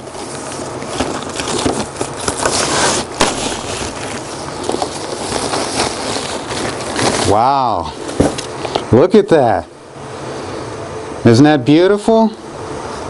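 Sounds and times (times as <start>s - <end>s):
packing material rustling: 0.0s - 8.9s.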